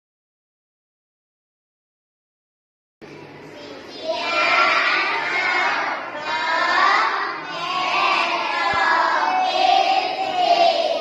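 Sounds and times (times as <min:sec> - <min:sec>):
children singing together: 0:03.6 - 0:11.0.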